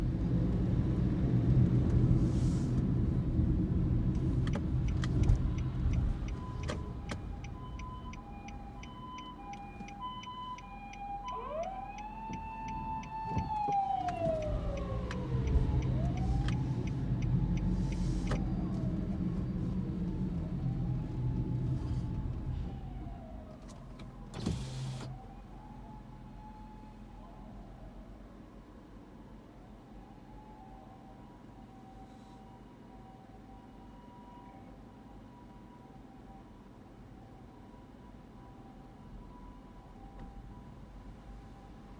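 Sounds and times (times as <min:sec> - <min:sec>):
low traffic rumble: 0:00.0 - 0:23.6
ambulance siren: 0:05.2 - 0:28.1, 0:29.8 - 0:41.9.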